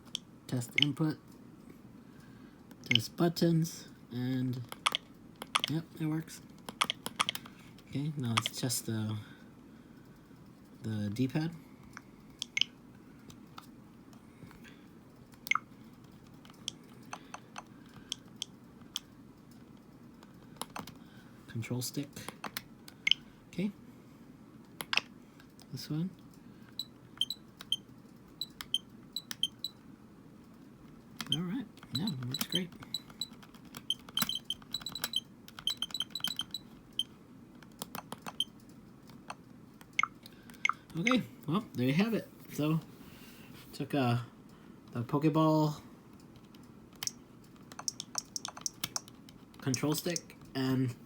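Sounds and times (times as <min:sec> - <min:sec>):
controller buttons clicking: 0:12.4 - 0:12.7, 0:28.4 - 0:29.7, 0:31.2 - 0:38.5, 0:46.3 - 0:50.2
button clicks: 0:47.8 - 0:49.0.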